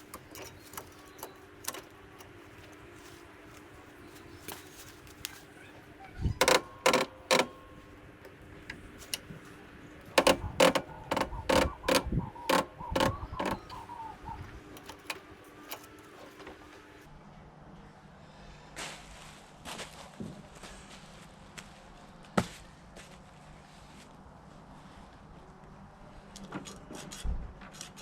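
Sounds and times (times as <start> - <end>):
tools clicking and knocking on metal: 0.0 - 2.4, 6.4 - 7.7, 10.2 - 13.8, 14.8 - 16.0.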